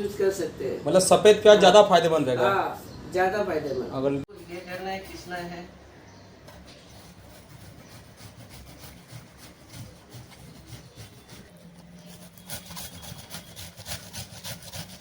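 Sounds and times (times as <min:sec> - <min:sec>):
onion rasping on a grater: 0:04.3 - 0:05.6, 0:06.7 - 0:15.0.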